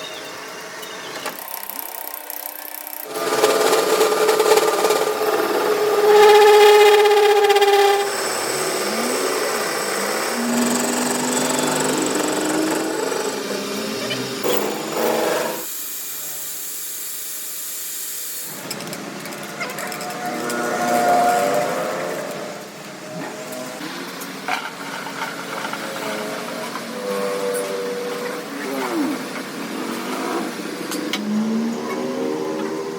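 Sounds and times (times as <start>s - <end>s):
power tools whining: 0.0s - 23.8s.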